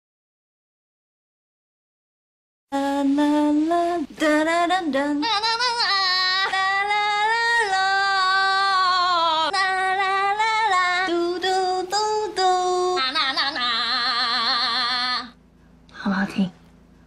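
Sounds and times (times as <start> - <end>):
woman singing: 2.7 - 15.4.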